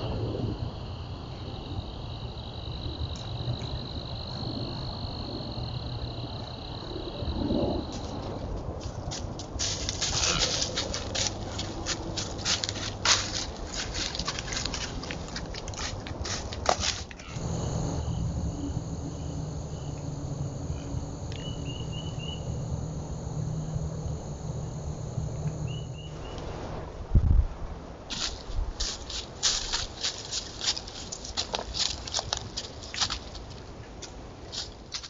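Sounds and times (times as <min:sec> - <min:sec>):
insect chirps: 0:00.0 - 0:08.4, 0:17.2 - 0:26.8
insects droning: 0:00.0 - 0:26.9
rustling in dry leaves: 0:08.0 - 0:25.7, 0:28.1 - 0:33.7.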